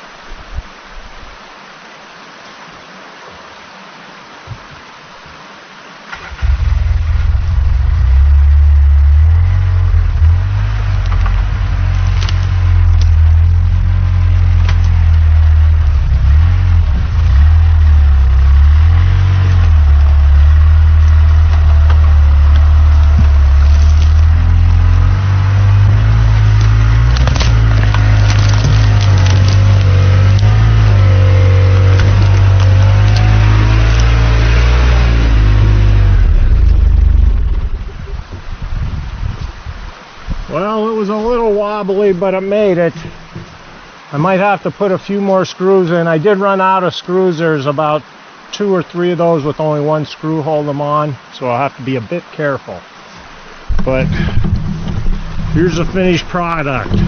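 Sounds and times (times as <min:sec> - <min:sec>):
faint flowing water: 0:00.0 - 0:57.0
utility vehicle engine running: 0:06.2 - 0:38.7, 0:53.7 - 0:57.0.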